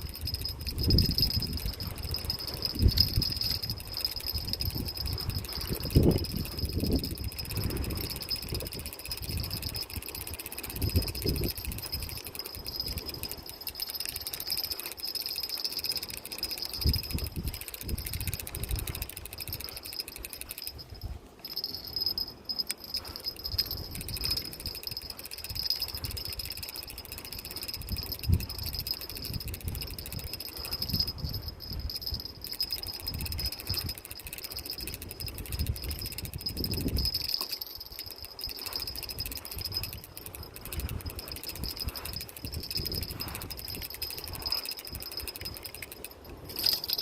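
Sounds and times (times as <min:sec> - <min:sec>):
low rumble of wind: 0:00.0 - 0:47.0
night insects chirring: 0:00.0 - 0:47.0.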